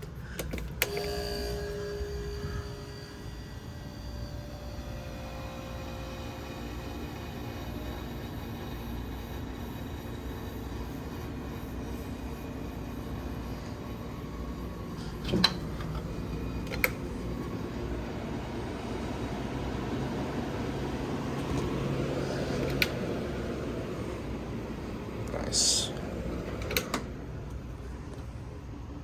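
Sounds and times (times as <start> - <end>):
low hum: 0.0 - 7.9
air conditioner fan running: 0.0 - 29.0.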